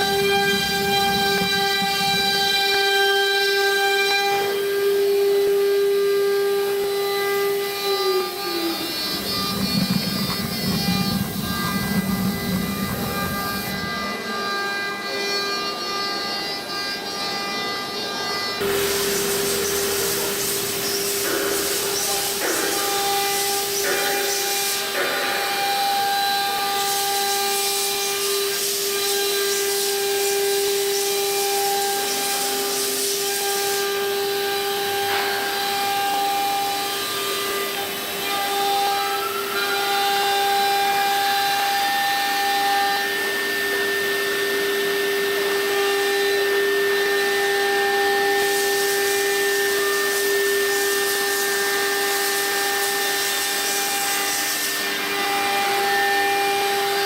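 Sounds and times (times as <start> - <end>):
router spindles whining: 0.0 - 57.0
hiss: 18.6 - 41.9, 46.4 - 57.0.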